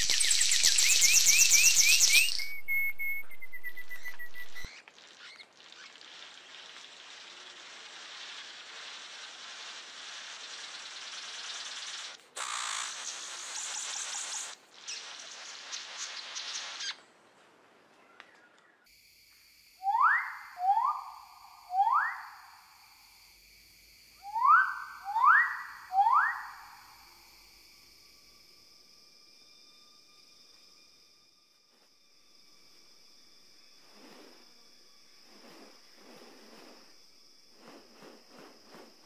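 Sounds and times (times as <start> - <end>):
bird whistle: 0.0 - 5.4, 12.4 - 15.0, 19.8 - 22.5, 24.2 - 26.8
faint hiss: 4.7 - 19.9, 26.6 - 39.0.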